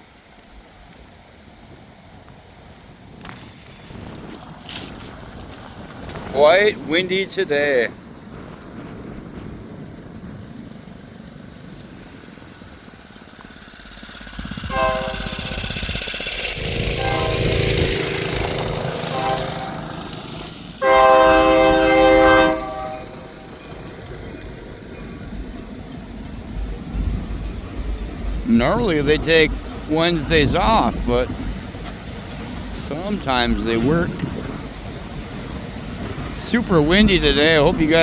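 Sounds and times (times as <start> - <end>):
train rumble: 0.0 - 38.0
wind buffeting microphone: 1.6 - 38.0
train horn blasts: 14.7 - 24.0.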